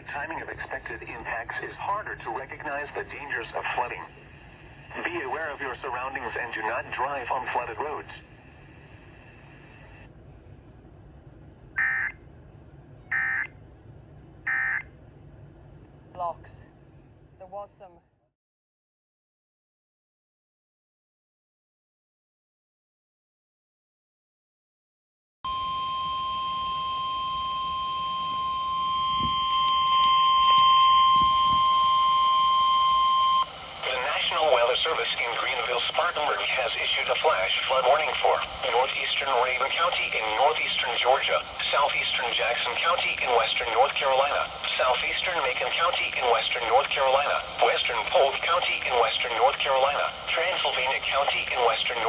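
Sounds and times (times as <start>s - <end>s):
steady alarm beep: 11.8s - 12.2s, 13.1s - 13.5s, 14.5s - 14.9s, 25.5s - 33.8s.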